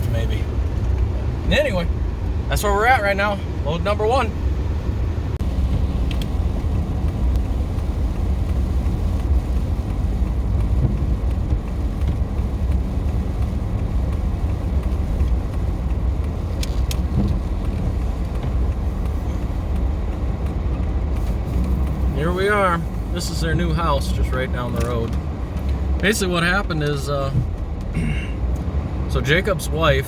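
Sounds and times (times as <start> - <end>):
truck engine and road noise: 0.0 - 30.0.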